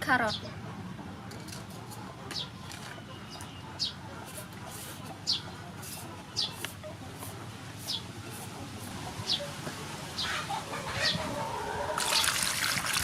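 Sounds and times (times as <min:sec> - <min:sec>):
bird chirping: 0:02.3 - 0:04.0, 0:05.2 - 0:06.6, 0:07.8 - 0:08.4, 0:09.2 - 0:09.5.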